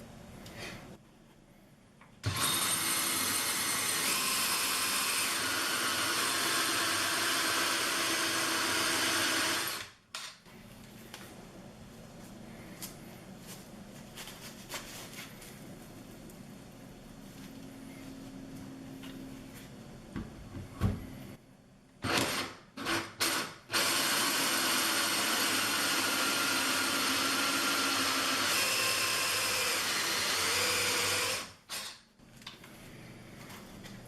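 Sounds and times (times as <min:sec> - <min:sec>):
cordless drill cutting with hole saw: 0:02.2 - 0:10.0, 0:22.0 - 0:32.0.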